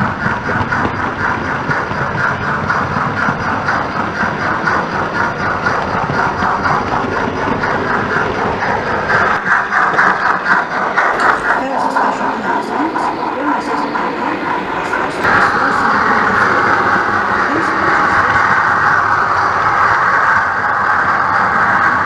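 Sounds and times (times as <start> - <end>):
model locomotive steam chuff: 0.0 - 22.0.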